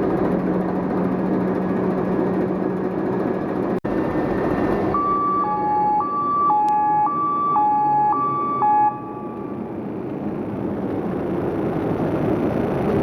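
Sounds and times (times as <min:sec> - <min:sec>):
diesel engine running: 0:00.0 - 0:13.0
two-tone electronic alarm: 0:04.9 - 0:09.7.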